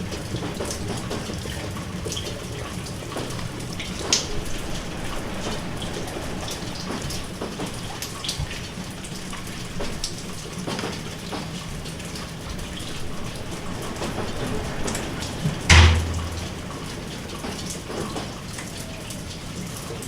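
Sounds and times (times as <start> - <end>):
steady rain falling: 0.0 - 20.0
deep thump: 15.7 - 16.6.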